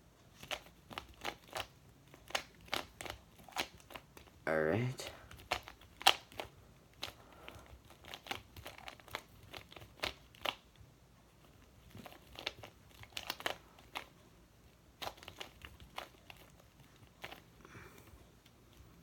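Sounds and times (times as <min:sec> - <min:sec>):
puzzle cube clicking: 0:05.4 - 0:10.6.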